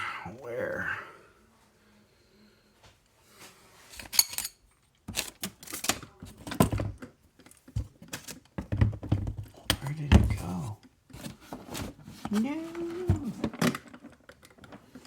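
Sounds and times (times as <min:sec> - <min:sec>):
metal parts and tools clattering: 0:03.9 - 0:06.0.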